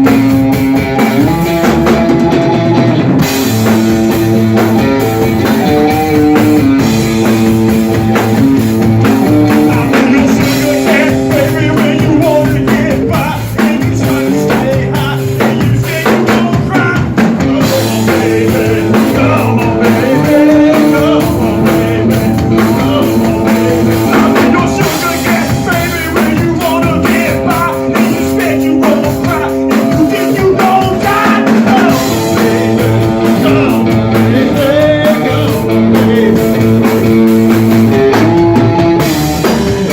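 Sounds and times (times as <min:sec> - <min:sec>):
drum kit rock beat: 0:00.0 - 0:39.9
electric guitar: 0:00.0 - 0:39.9.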